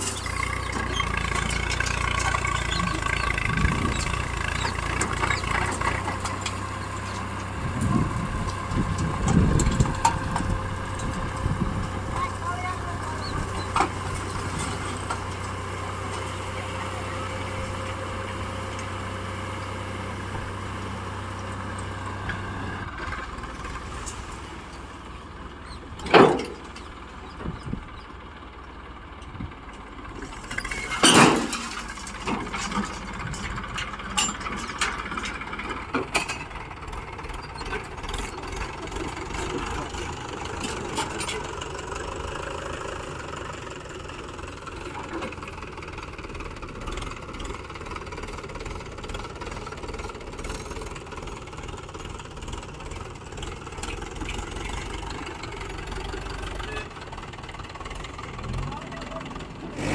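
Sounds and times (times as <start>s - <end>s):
diesel engines running: 0.0s - 59.9s.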